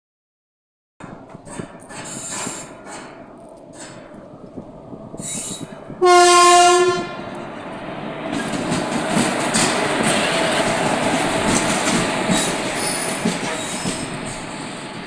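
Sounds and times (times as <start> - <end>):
train running noise: 1.0 - 15.0
train horn blast: 6.0 - 7.4.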